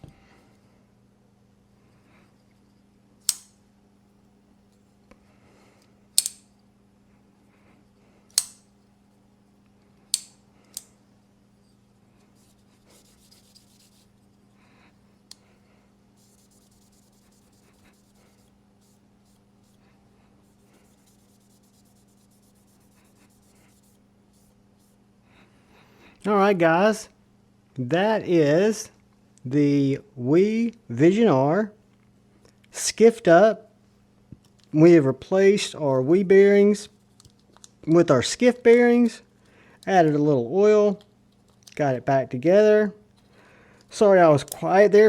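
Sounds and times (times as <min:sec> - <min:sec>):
knife blade snapping open: 0:03.3 - 0:03.6, 0:06.2 - 0:06.5, 0:08.3 - 0:08.7
faint scratching and rubbing: 0:11.7 - 0:14.4, 0:16.2 - 0:25.0.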